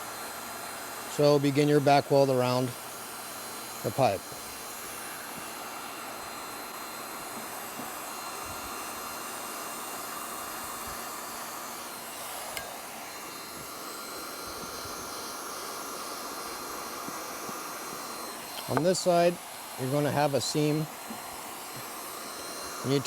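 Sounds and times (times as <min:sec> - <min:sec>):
hot-air welding gun hissing: 0:00.0 - 0:23.0.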